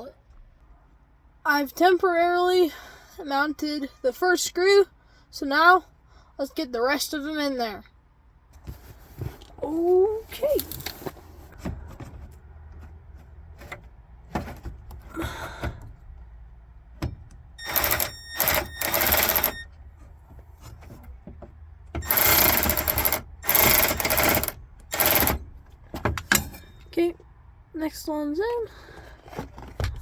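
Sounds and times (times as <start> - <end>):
power drill whirring: 17.6 - 19.6, 22.0 - 25.4.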